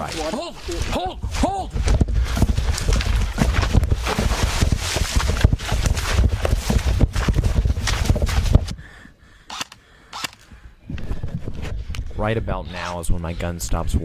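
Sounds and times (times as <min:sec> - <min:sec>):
footsteps: 0:00.0 - 0:08.8
rustling gear: 0:00.0 - 0:08.8
sharp clicks: 0:09.5 - 0:10.5.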